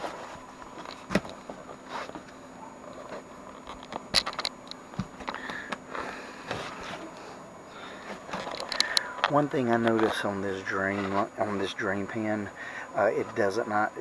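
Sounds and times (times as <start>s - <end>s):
handling clicks taps and scrapes: 0.0s - 7.3s, 8.0s - 11.8s
faint steady hum: 0.0s - 14.0s.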